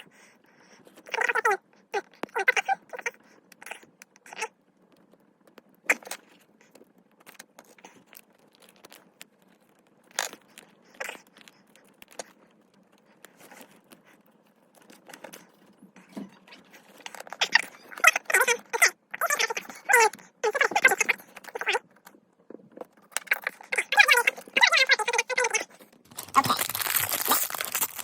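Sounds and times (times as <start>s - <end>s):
plastic packet rustling and tearing: 5.7s - 22.0s, 22.9s - 28.0s
plastic pieces clicking: 22.8s - 28.0s.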